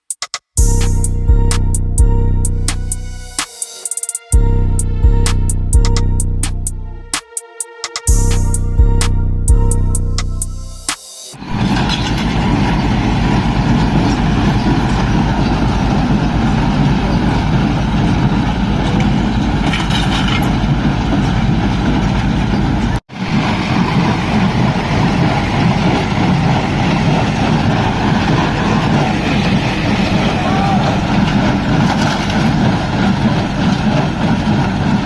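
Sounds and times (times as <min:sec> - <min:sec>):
baler machinery noise: 0:09.6 - 0:35.0.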